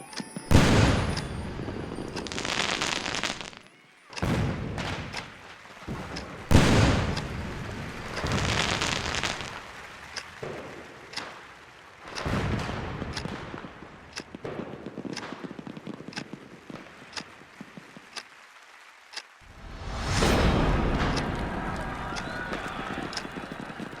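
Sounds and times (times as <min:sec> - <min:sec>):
crackling pops: 0:00.0 - 0:24.0
firework booms: 0:00.4 - 0:03.4, 0:04.2 - 0:11.1, 0:12.1 - 0:16.9, 0:19.5 - 0:24.0.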